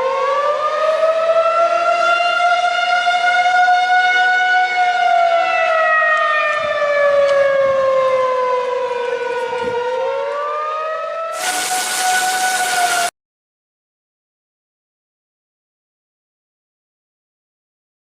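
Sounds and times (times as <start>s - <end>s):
emergency siren tone: 0.0s - 13.1s
loud static hiss: 11.4s - 13.1s.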